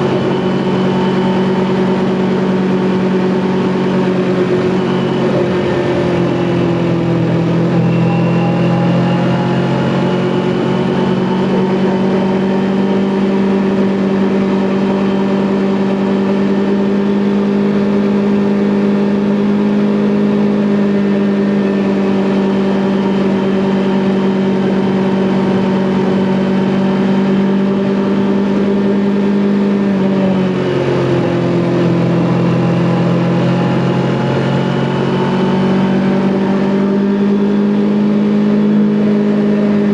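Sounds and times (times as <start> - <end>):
motorcycle engine at steady revs: 0.0 - 39.9.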